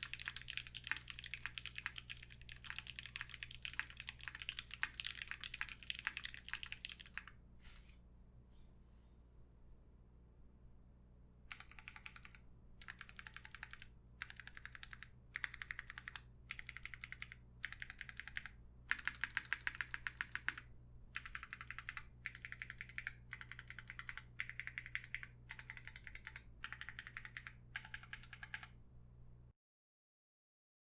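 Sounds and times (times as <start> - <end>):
mechanical keyboard typing: 0.0 - 7.3, 11.5 - 28.7
low steady hum: 0.0 - 29.5.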